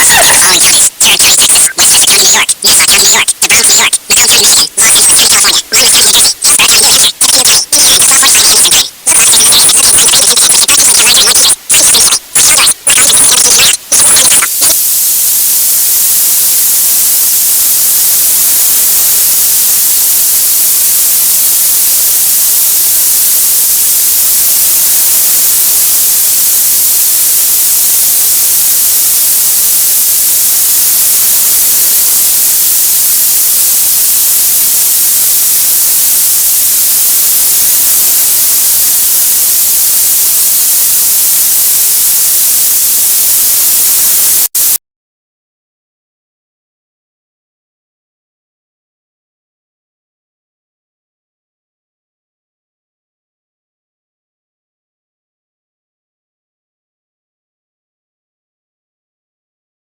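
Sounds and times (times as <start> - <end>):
harsh distorted signal noise: 0.0 - 44.8
tv static hiss: 0.0 - 44.8.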